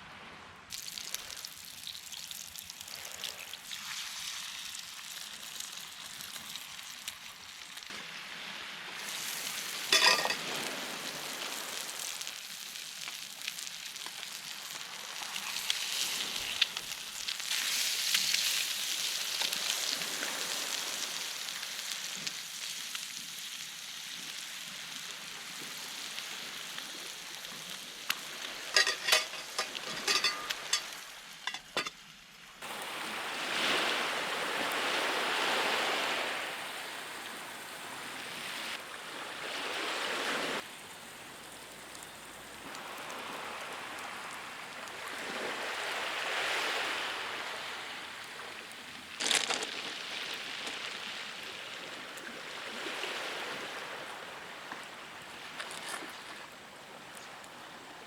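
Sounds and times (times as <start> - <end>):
food sizzling in a pan: 0.7 - 35.2.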